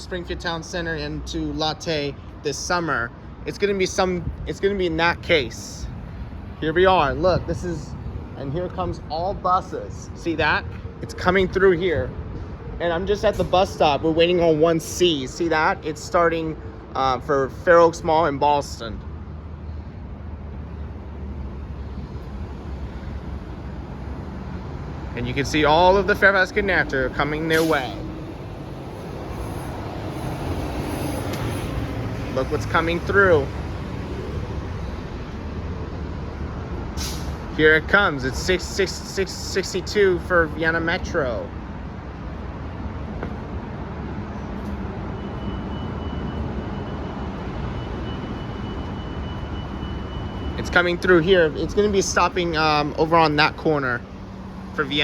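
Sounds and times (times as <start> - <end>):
bus engine running: 19.0 - 55.0.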